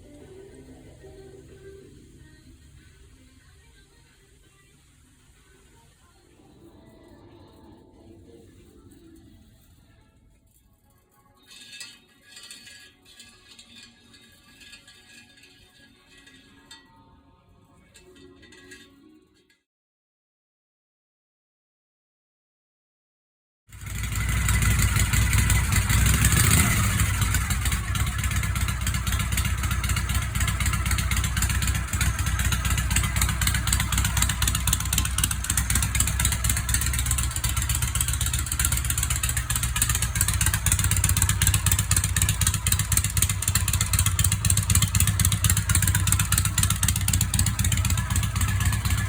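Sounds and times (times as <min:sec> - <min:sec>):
motorcycle engine idling: 0:23.7 - 0:49.0.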